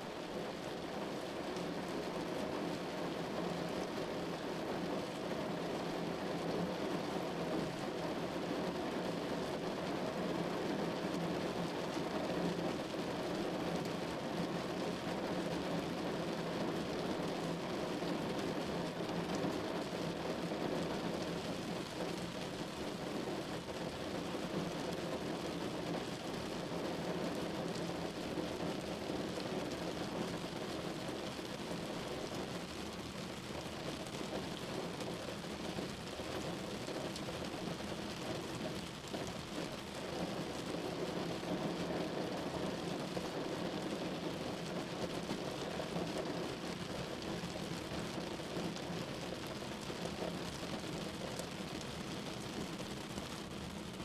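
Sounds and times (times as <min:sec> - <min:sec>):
rain on a window: 0:00.0 - 0:54.0.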